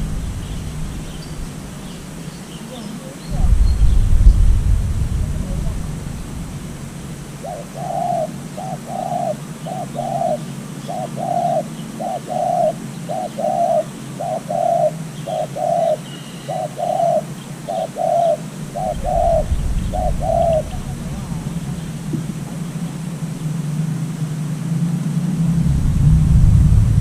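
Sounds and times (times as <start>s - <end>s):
low rumble: 0.0s - 2.3s, 3.2s - 7.8s, 18.6s - 23.9s, 24.5s - 27.0s
dove cooing: 0.0s - 24.4s.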